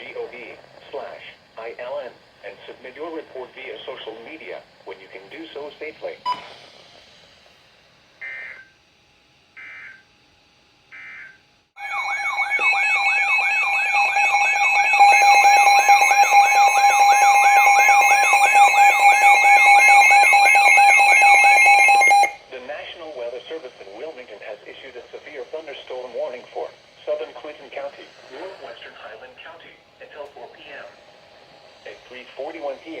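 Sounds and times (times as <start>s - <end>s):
warbling alert siren: 10.9s - 22.4s
buzzy digital data bursts: 11.8s - 22.4s
steady tone: 11.8s - 22.4s.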